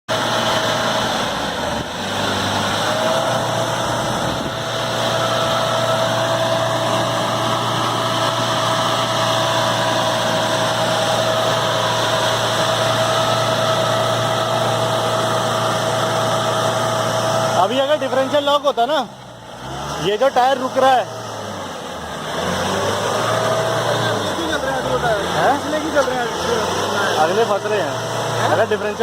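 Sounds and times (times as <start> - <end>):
high whine: 0.1 - 18.5
car engine running: 0.1 - 29.0.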